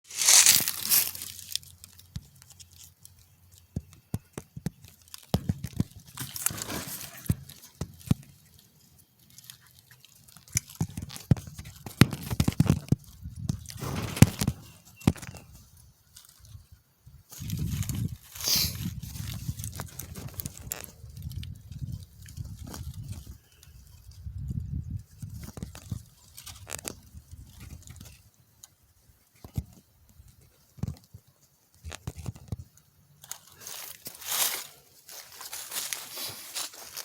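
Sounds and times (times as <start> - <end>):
crunching rustles: 0.0 - 37.0
burst of hiss: 18.4 - 18.8.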